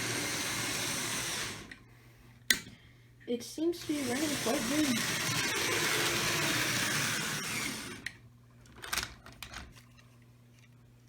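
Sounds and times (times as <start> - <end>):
model train motor whirring: 0.0 - 1.8, 3.8 - 8.2.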